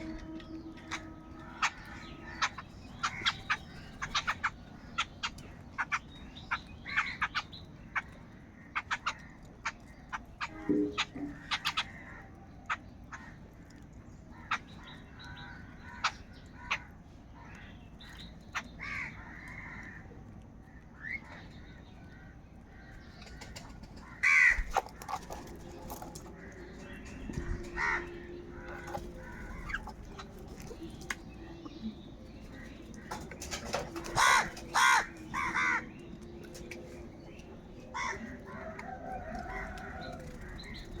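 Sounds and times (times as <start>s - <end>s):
crows cawing: 0.0s - 6.0s, 18.8s - 20.1s, 22.1s - 36.0s, 37.9s - 41.0s.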